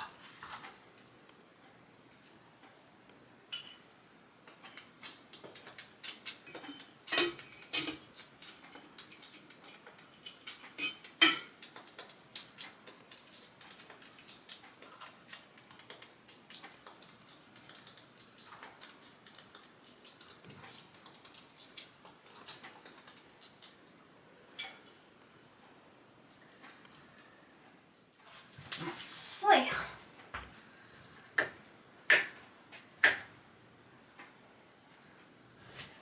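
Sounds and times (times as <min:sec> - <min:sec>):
small tools clicking and clinking: 0:04.5 - 0:25.0.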